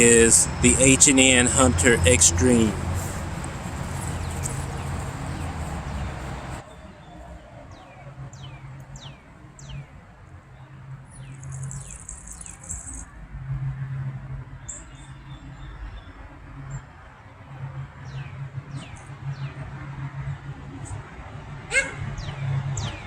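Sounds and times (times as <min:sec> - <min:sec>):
rushing noise: 0:00.0 - 0:07.7
songbird chirping: 0:00.0 - 0:13.0
high buzzy bird trill: 0:11.1 - 0:13.0.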